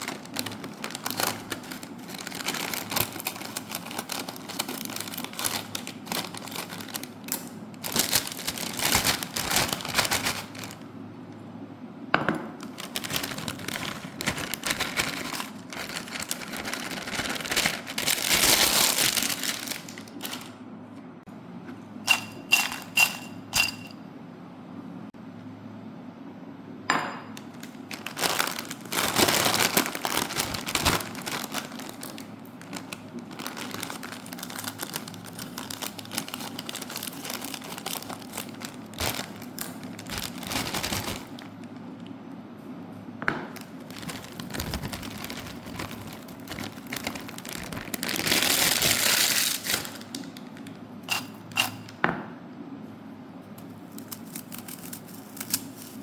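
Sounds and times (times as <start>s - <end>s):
plastic snack packets crinkling: 0.0s - 10.9s, 12.6s - 20.6s, 27.4s - 42.1s, 43.5s - 50.8s.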